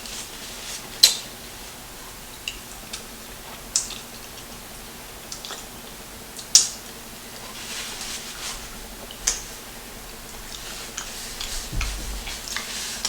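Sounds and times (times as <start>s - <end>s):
smacking eating crackles: 0.0s - 13.0s.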